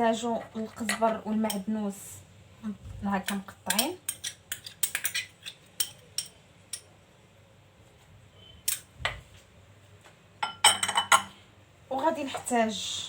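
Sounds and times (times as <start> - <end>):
dishes clinking: 10.4 - 11.4.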